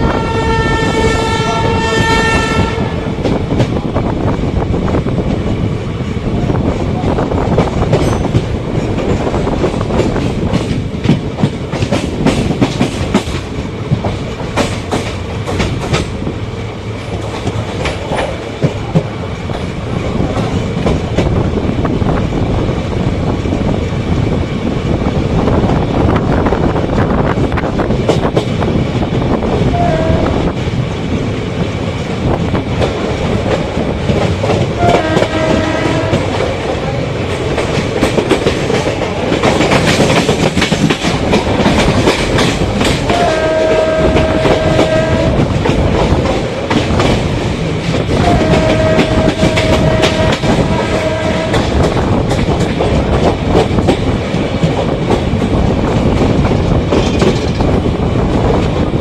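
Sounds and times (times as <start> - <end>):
locomotive horn: 0.0 - 3.3, 29.7 - 30.5, 34.8 - 36.4, 43.1 - 45.6, 48.1 - 51.8
train wheels on rails: 0.0 - 59.0.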